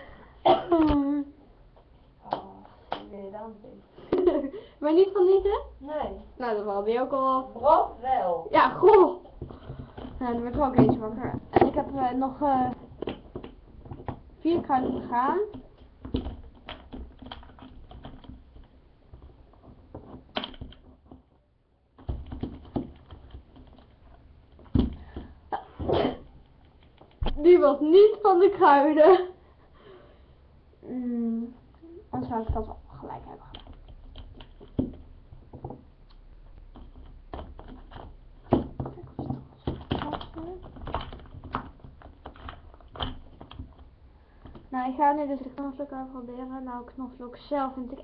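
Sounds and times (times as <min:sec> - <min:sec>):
plastic jars clicking and tapping: 0:08.8 - 0:25.6, 0:32.1 - 0:44.7
spice jars knocking and clicking: 0:33.5 - 0:44.7.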